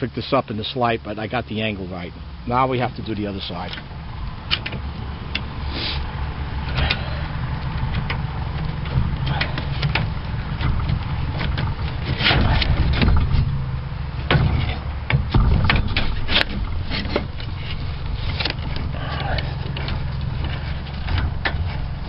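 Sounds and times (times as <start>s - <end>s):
grinding wheel scraping metal: 5.5s - 22.0s.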